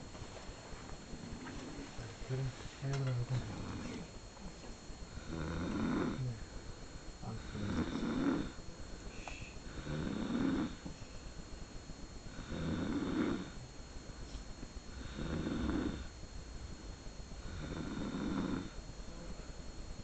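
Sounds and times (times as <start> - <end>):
woman snoring: 5.1 - 6.4, 7.4 - 10.8, 12.3 - 13.6, 14.9 - 16.1, 17.4 - 19.4.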